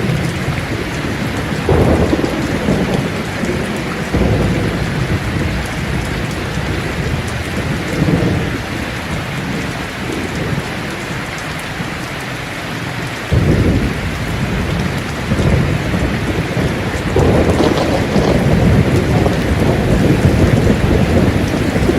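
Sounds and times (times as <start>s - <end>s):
thunder rumbling: 0.0s - 12.0s, 13.0s - 21.9s
heavy rain falling: 0.0s - 21.9s.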